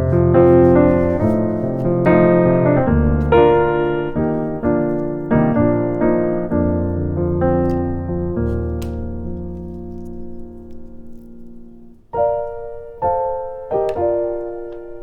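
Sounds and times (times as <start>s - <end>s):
slow gentle solo piano: 0.0s - 15.0s.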